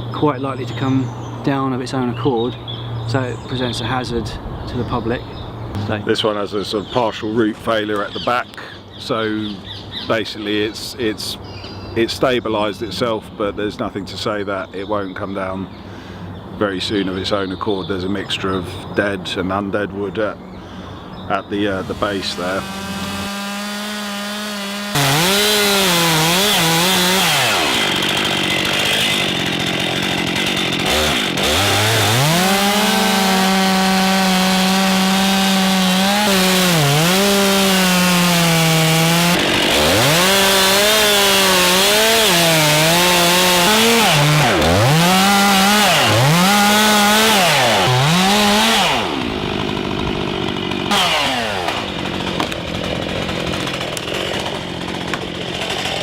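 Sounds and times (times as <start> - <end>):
chainsaw cutting wood: 21.8 - 56.0.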